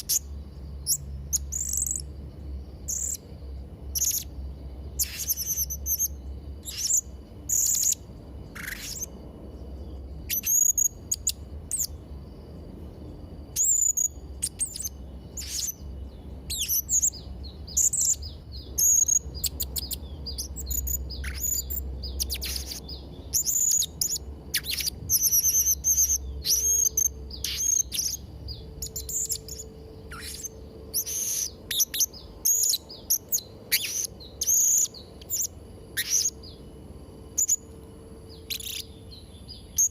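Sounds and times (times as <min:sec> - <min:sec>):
faint low hum: 0:00.0 - 0:39.9
parrot chirping shrilly: 0:28.8 - 0:34.9.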